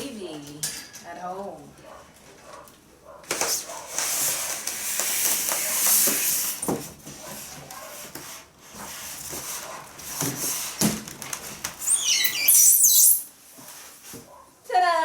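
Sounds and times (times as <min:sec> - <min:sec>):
cardboard and plastic rustling: 0:03.3 - 0:11.8
high squeak: 0:11.8 - 0:13.3.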